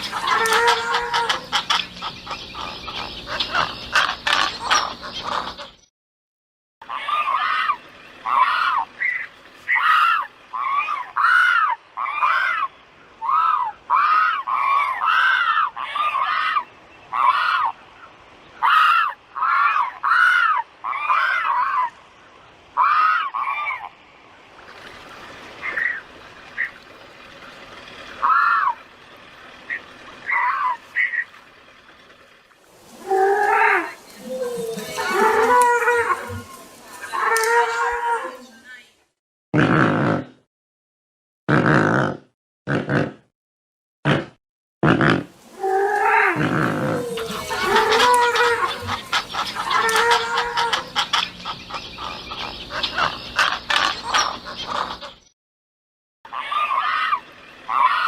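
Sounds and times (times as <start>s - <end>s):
dense many-pitched animal sound: 0.0s - 5.7s, 6.8s - 17.8s, 29.6s - 31.3s, 32.8s - 38.8s, 44.8s - 55.2s, 56.3s - 58.0s
waterbird honking calls: 0.0s - 5.8s, 6.8s - 17.8s, 25.4s - 31.6s, 32.8s - 38.1s, 45.5s - 55.2s.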